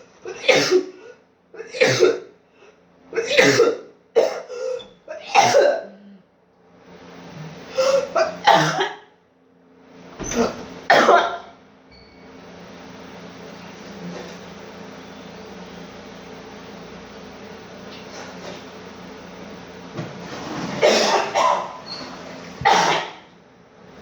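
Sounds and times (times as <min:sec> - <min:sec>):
person coughing: 0:00.2 - 0:02.4, 0:03.1 - 0:06.1, 0:07.7 - 0:09.1, 0:10.3 - 0:11.5, 0:20.8 - 0:21.8, 0:22.6 - 0:23.3.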